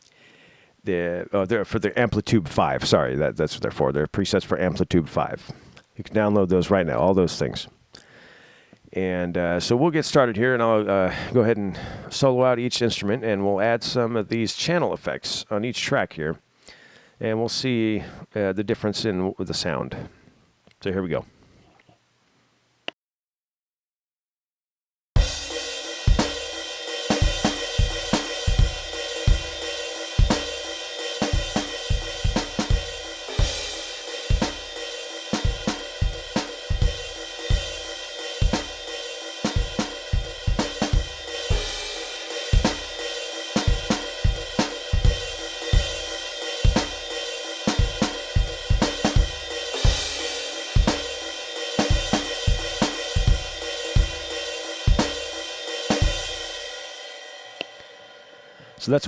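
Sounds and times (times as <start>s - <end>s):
snare drum: 25.2s - 56.6s
hi-hat and cymbals: 25.2s - 58.6s.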